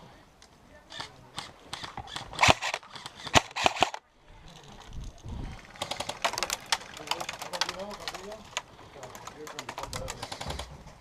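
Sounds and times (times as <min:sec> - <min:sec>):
airsoft gun shots: 0:01.7 - 0:04.0.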